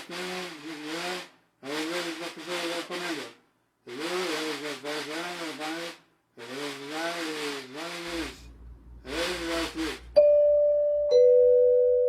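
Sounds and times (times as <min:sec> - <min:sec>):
two-tone cabin chime: 0:10.2 - 0:12.0.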